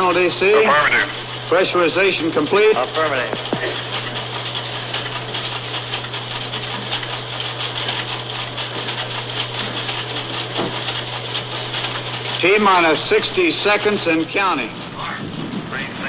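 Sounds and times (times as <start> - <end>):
line hiss and crackle: 14.4 - 16.0.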